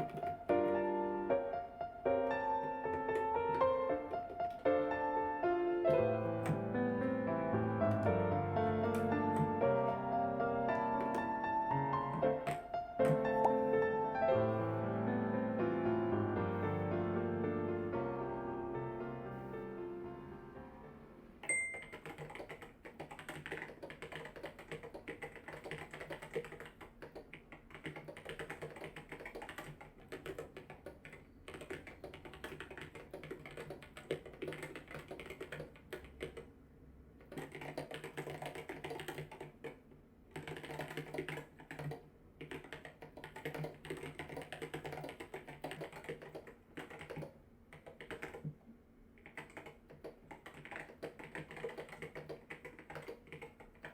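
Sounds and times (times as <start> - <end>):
mechanical keyboard typing clacks: 0.0 - 0.6, 5.9 - 6.8, 7.9 - 10.0, 10.6 - 13.6, 21.4 - 36.5, 37.2 - 48.6, 49.2 - 53.9.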